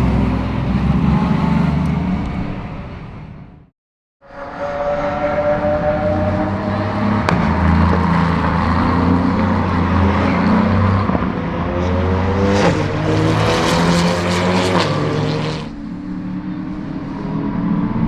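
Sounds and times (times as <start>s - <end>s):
race car engine accelerating past: 4.3s - 15.8s.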